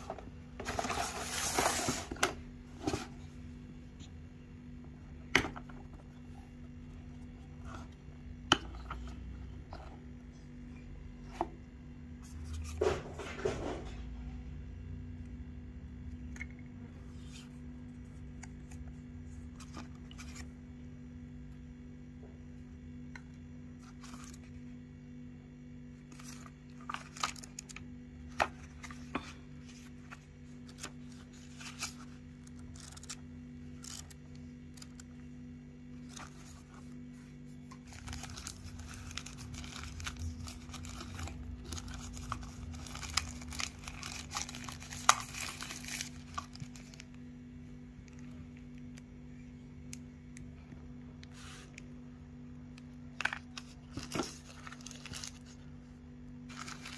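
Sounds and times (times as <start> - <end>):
steady low hum: 0.0 - 56.9
packaging rustling: 0.6 - 3.2, 26.0 - 35.3, 35.9 - 47.2, 53.1 - 55.8, 56.5 - 56.9.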